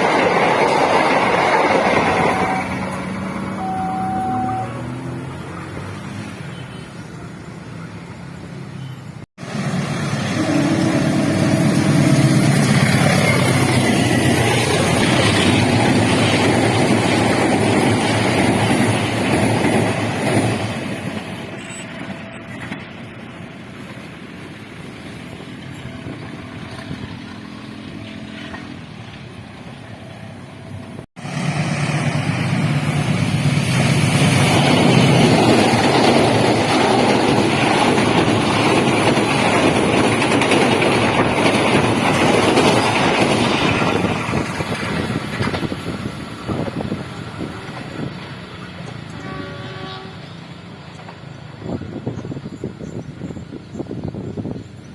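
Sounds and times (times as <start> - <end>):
train running rumble: 0.0 - 5.8, 9.4 - 54.9
locomotive air horn: 2.1 - 5.1, 10.2 - 12.5, 49.1 - 50.3.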